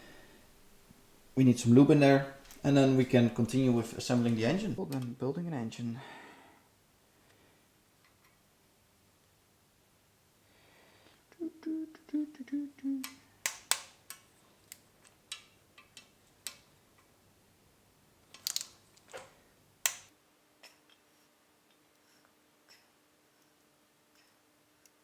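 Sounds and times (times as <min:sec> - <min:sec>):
person humming: 0:11.3 - 0:13.2
tools and engine parts clicking: 0:13.0 - 0:17.1, 0:18.3 - 0:20.1.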